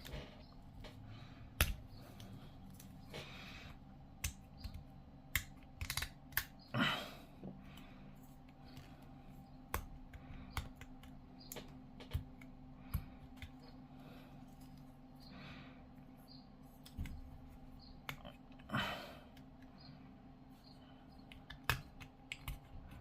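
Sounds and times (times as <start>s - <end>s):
plastic parts clicking: 4.2s - 6.6s.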